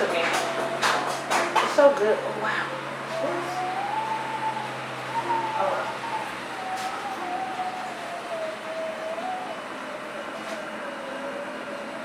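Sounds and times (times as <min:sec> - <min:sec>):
thin wavering tone: 0:02.6 - 0:11.9.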